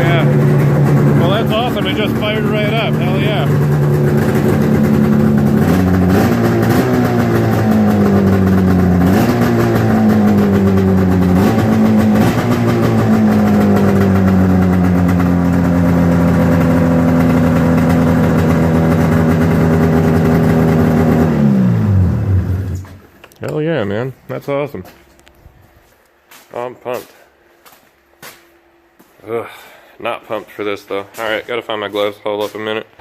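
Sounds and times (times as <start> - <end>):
snowmobile engine revving and idling: 0.0 - 23.0.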